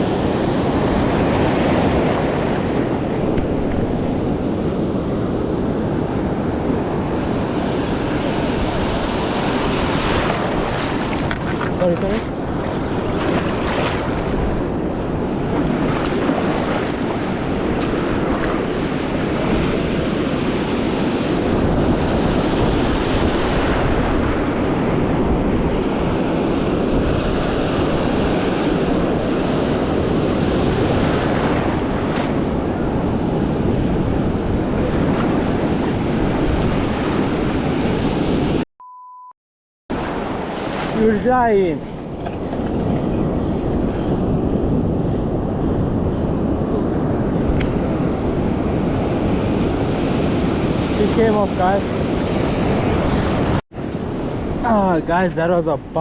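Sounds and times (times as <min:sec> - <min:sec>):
wind buffeting microphone: 0:00.0 - 0:38.6, 0:39.9 - 0:56.0
surf breaking: 0:06.2 - 0:20.2
short beep: 0:38.8 - 0:39.4.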